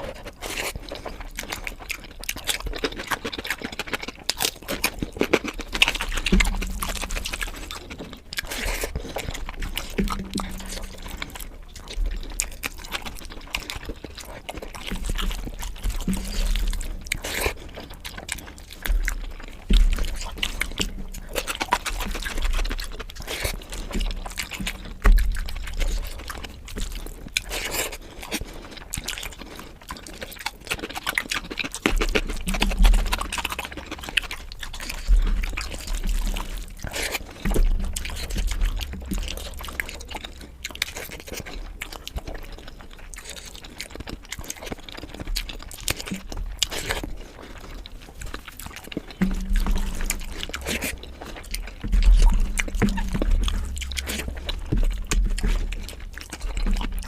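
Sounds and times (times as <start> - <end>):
wet chewing and smacking: 0.0 - 57.0
soft low bumps: 5.7 - 13.1, 14.6 - 27.1, 32.0 - 40.8, 48.0 - 57.0.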